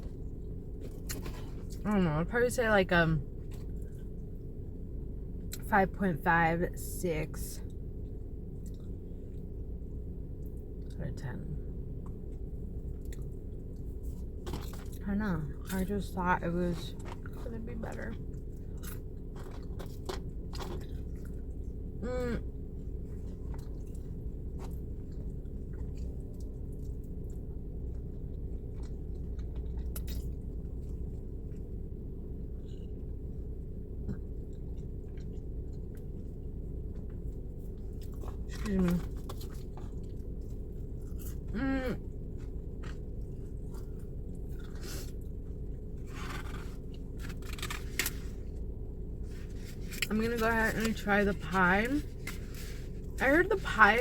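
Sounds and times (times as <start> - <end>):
low steady hum: 0.0 - 54.0
person chewing food: 7.7 - 11.0, 11.9 - 15.0, 18.1 - 50.1
person humming: 22.0 - 22.5.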